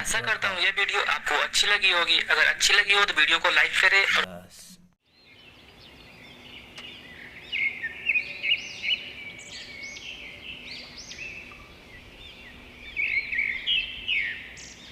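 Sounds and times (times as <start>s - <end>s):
small birds chirping: 5.0s - 14.9s.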